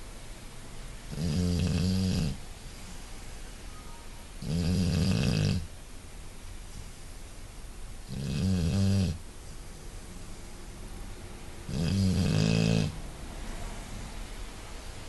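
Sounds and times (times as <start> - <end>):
low-pitched snores: 1.1 - 2.4, 4.4 - 5.6, 8.1 - 9.2, 11.7 - 13.0.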